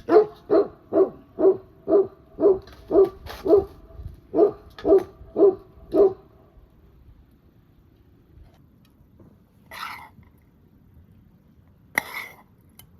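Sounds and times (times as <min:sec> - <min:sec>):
dog barking: 0:00.0 - 0:03.7, 0:04.3 - 0:06.3.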